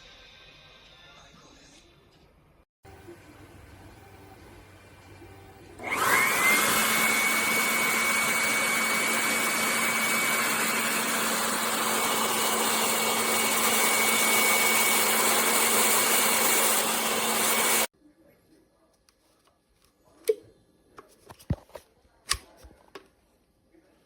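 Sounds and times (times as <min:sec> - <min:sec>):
electric blower motor whine: 0:05.7 - 0:17.9.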